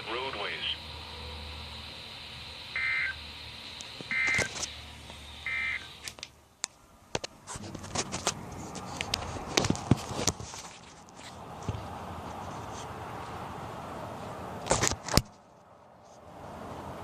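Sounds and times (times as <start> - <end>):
buzzy two-tone data bursts: 0.0 - 6.1
faint radio hiss: 0.0 - 8.6
sharp clicks and knocks: 6.0 - 11.8, 14.6 - 15.4.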